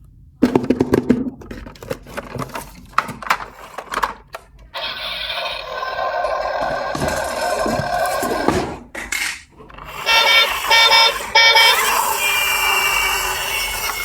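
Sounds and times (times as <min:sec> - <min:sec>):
toy whirring: 0:04.7 - 0:14.0
toy horn beeps: 0:09.9 - 0:14.0
steady electronic tones: 0:10.0 - 0:13.0.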